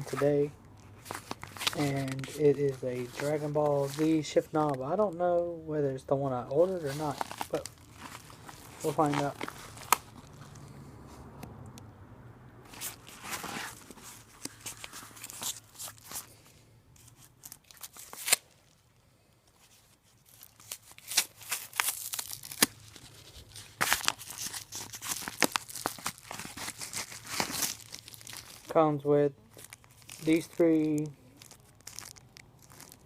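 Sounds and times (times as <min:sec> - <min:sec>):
packaging tearing and crinkling: 0:00.9 - 0:04.8, 0:06.5 - 0:10.6, 0:12.7 - 0:16.4, 0:17.0 - 0:18.8, 0:19.6 - 0:28.8, 0:29.5 - 0:33.0.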